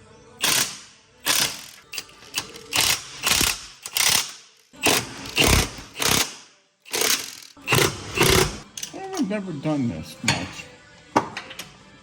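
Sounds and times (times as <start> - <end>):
ratchet wrench clicking: 0.4 - 8.9.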